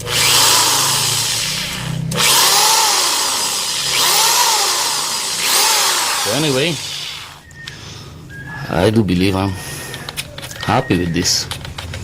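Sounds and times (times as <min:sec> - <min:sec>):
electric drill motor running: 0:00.0 - 0:07.4.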